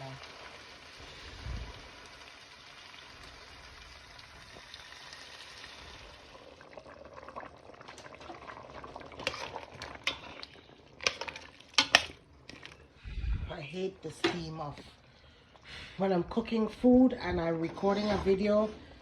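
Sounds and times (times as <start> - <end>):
chicken sizzling in a pot: 0.0 - 13.0
utensil and dishes clattering: 11.0 - 12.7.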